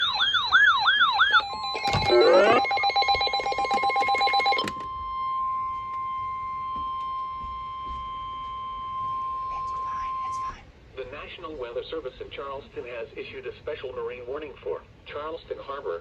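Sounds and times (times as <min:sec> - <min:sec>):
steady alarm tone: 0:00.0 - 0:10.3
jumble of beeping and chirping tones: 0:01.3 - 0:05.1
warbling electronic alert tone: 0:01.4 - 0:04.7.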